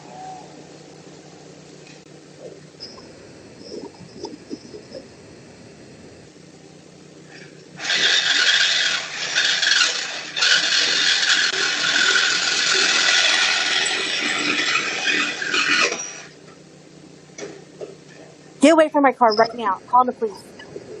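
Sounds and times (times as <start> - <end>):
power tool cutting metal: 7.8 - 16.4.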